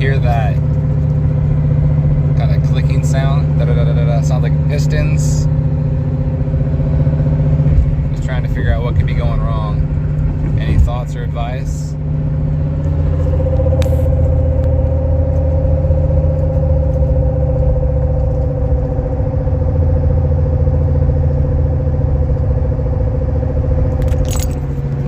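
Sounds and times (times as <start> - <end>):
man talking: 0.0 - 0.6, 2.4 - 5.5, 8.1 - 9.8, 10.5 - 12.0
engine idling: 0.0 - 25.0
fast engine clicking: 0.0 - 25.0.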